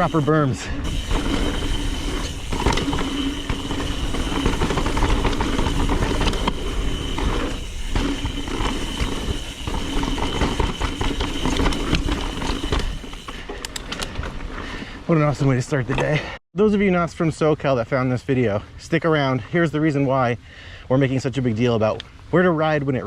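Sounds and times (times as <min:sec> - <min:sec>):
wind rush on microphone: 0:00.0 - 0:13.3
bike hub freewheel buzz: 0:00.0 - 0:13.5
tyres rumbling over dirt: 0:00.0 - 0:15.8.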